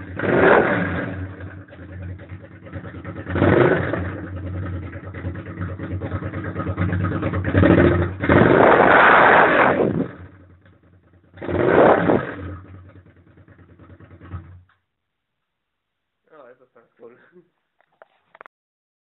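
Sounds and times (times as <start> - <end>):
motorcycle engine idling and revving: 0.0 - 14.8.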